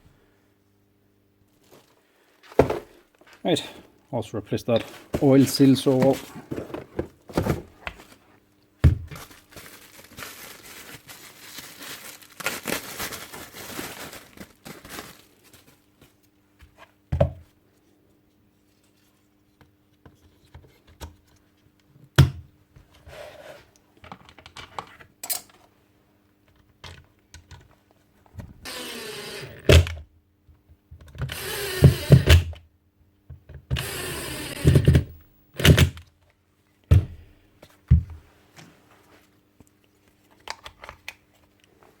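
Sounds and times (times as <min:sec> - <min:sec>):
faint steady hum: 0:00.0 - 0:31.4.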